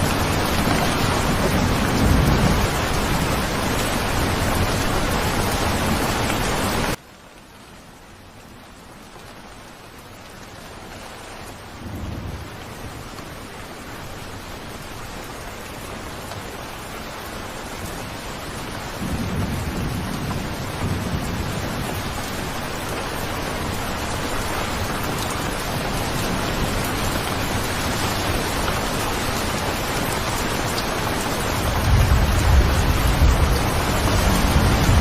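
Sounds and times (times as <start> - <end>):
thunder rumbling: 0.0 - 7.0, 19.0 - 35.0
steady rain: 0.0 - 35.0.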